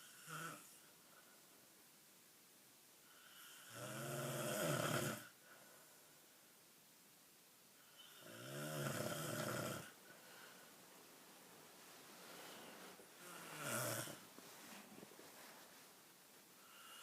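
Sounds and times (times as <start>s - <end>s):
person snoring: 3.1s - 5.3s, 8.0s - 10.0s, 13.2s - 14.2s.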